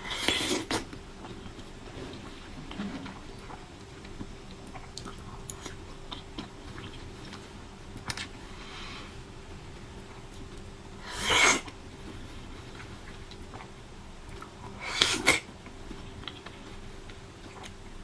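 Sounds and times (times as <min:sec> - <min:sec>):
chewing fruit: 0:00.0 - 0:08.4, 0:12.7 - 0:18.0.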